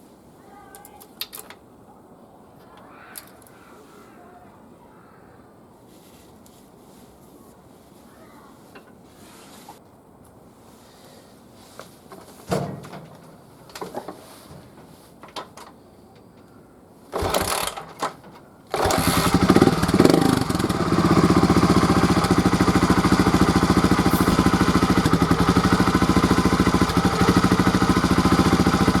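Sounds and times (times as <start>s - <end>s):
motorcycle engine starting and idling: 17.1s - 29.0s.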